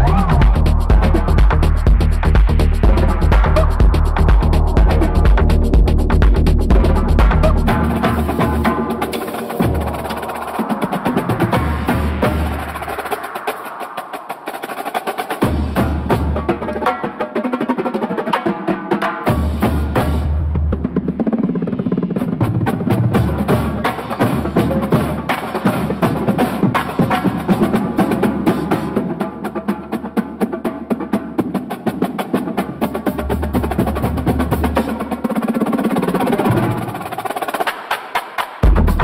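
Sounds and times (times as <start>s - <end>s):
steady bass line: 0.0s - 12.6s, 38.6s - 39.0s
rapid dance percussion: 0.0s - 39.0s.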